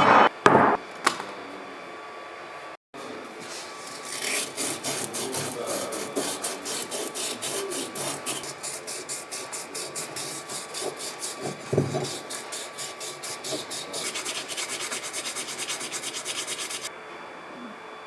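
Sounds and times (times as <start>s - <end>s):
hand scrubbing or sanding strokes: 3.9s - 16.9s.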